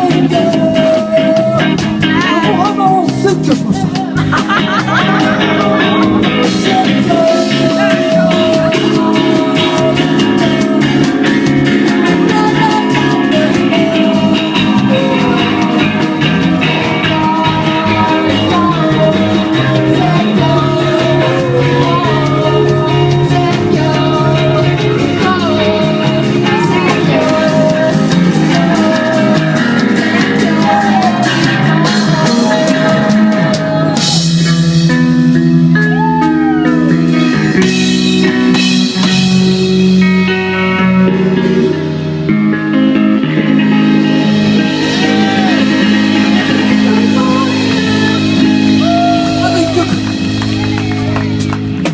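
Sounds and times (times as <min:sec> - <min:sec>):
person singing: 0:00.0 - 0:34.9, 0:43.0 - 0:51.9
drum kit beat: 0:00.0 - 0:51.9
guitar: 0:00.0 - 0:51.9
rock band playing live: 0:00.0 - 0:51.9.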